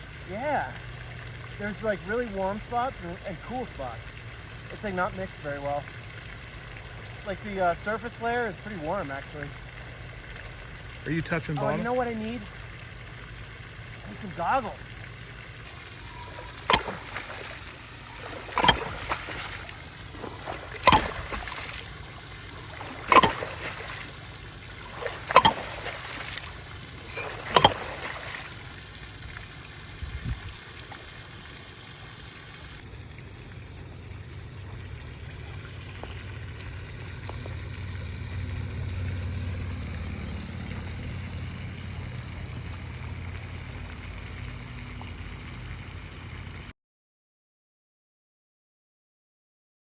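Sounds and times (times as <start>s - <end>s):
water splashing strokes: 0.0s - 32.8s.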